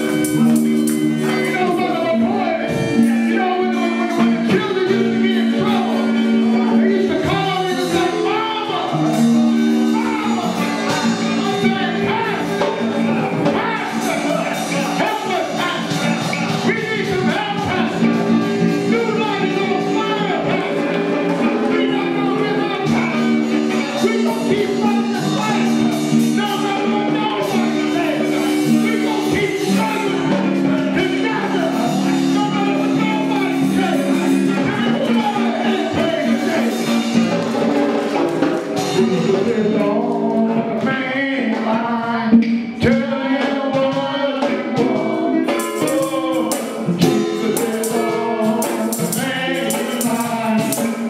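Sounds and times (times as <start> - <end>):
keyboard chords: 0.0 - 51.0
voices singing and shouting: 0.0 - 51.0
drum and cymbal hits: 42.5 - 51.0.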